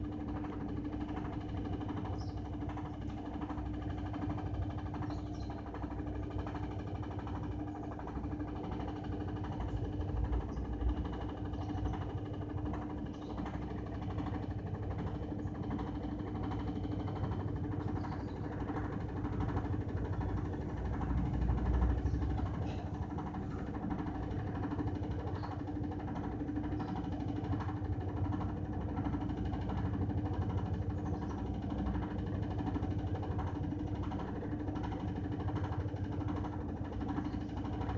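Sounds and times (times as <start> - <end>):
faint clicks and rattles: 0.0 - 37.9
washing machine motor hum: 0.0 - 37.9.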